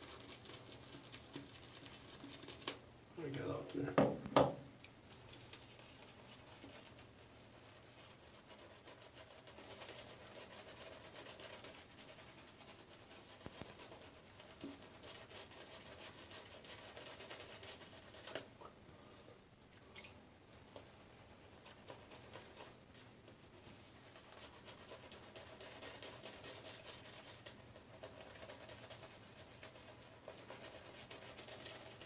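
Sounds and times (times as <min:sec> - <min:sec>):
shaving brush rubbing lather: 0:05.2 - 0:18.5, 0:20.6 - 0:32.0.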